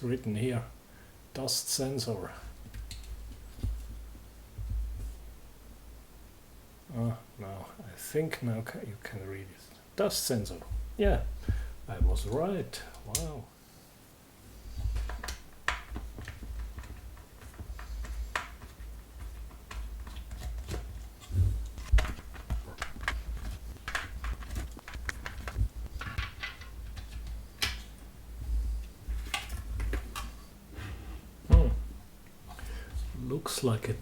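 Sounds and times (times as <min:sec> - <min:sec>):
low handling thumps: 0:10.6 - 0:13.1, 0:31.5 - 0:32.3.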